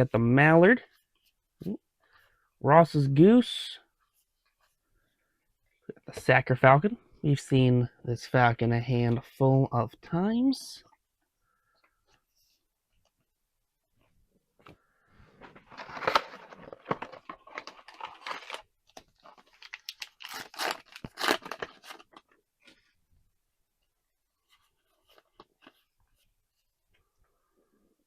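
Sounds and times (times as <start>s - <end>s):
card pack wrapper crinkling and tearing: 15.6s - 22.4s.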